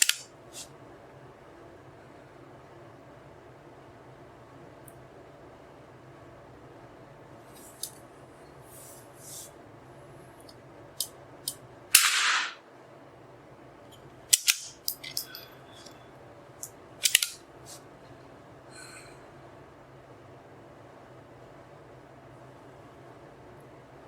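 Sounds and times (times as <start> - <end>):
rifle shot with echo: 12.0 - 12.6
sharp clicks: 17.0 - 17.4.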